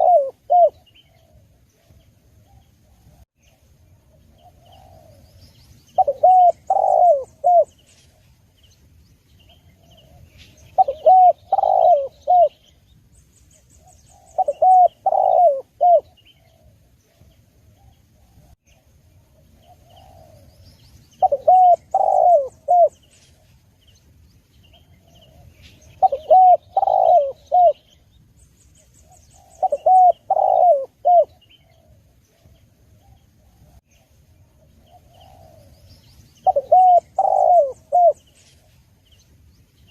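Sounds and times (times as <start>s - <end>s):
dove cooing: 0.0s - 3.2s, 4.1s - 5.4s, 6.0s - 8.2s, 9.5s - 12.7s, 13.8s - 18.6s, 19.4s - 20.6s, 21.2s - 23.6s, 24.7s - 28.0s, 29.0s - 33.8s, 34.5s - 38.8s.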